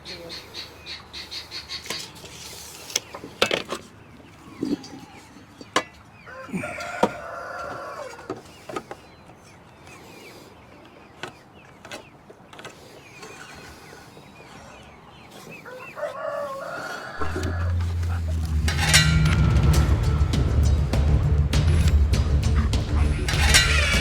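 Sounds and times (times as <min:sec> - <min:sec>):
rooster crowing: 0:06.2 - 0:08.3, 0:15.6 - 0:20.3.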